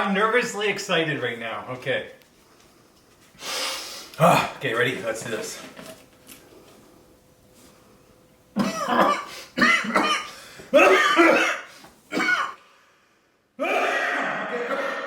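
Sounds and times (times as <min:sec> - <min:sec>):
man coughing: 0:08.6 - 0:12.6, 0:13.6 - 0:15.0.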